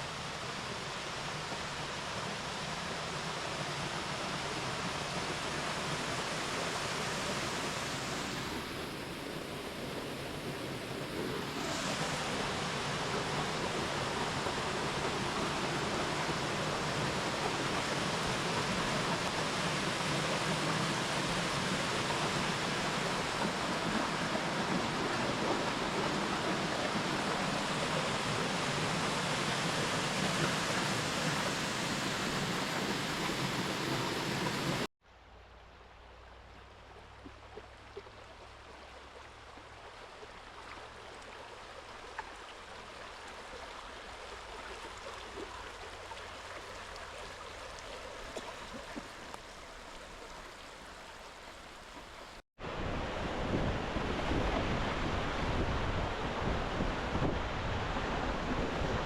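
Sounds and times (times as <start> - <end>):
waterfall water rushing: 0.0 - 34.9.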